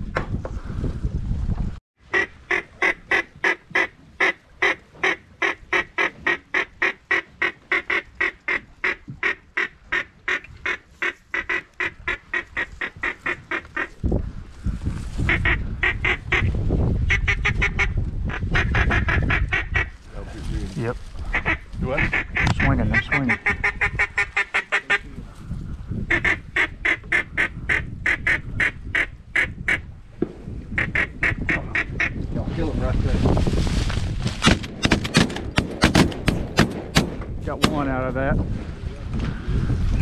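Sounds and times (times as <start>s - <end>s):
wind rumble on microphone: 0.0s - 1.8s, 5.0s - 40.0s
duck call quacks: 2.1s - 14.0s, 15.3s - 16.5s, 17.1s - 20.0s, 21.3s - 25.1s, 26.1s - 29.8s, 30.8s - 32.2s.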